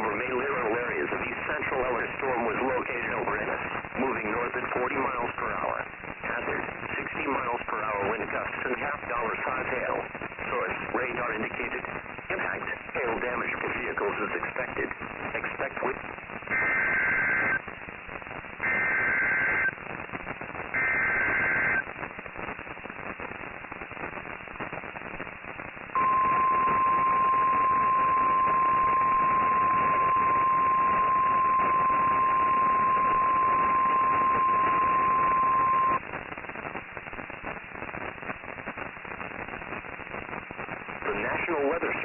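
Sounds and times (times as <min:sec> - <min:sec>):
radio hiss: 0:00.0 - 0:42.0
buzzy digital data bursts: 0:16.5 - 0:17.6, 0:18.6 - 0:19.7, 0:20.7 - 0:21.8, 0:26.0 - 0:36.0
steady alarm tone: 0:16.6 - 0:17.5, 0:18.6 - 0:19.7, 0:20.8 - 0:21.8, 0:26.0 - 0:36.0.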